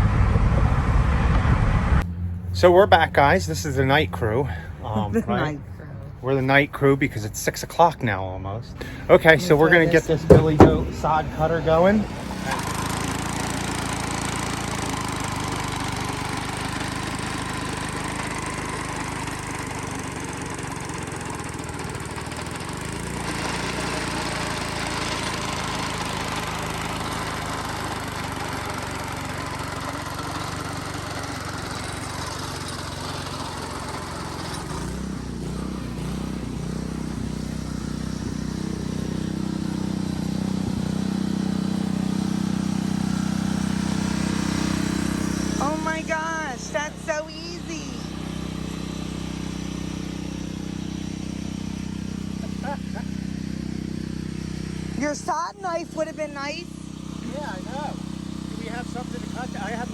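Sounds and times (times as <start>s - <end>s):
small gas engine running: 2.0s - 7.0s, 8.8s - 59.9s.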